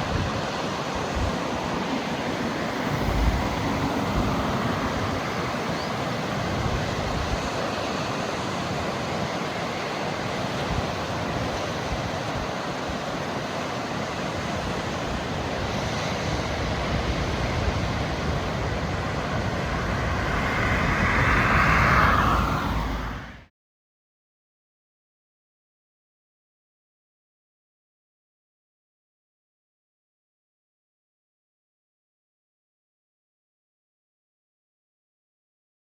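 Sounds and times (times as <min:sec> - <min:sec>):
wind rumbling on microphone: 0:00.0 - 0:09.0, 0:14.4 - 0:23.5
ocean surf washing ashore: 0:00.0 - 0:23.5
wave breaking: 0:01.4 - 0:08.2, 0:16.3 - 0:23.5.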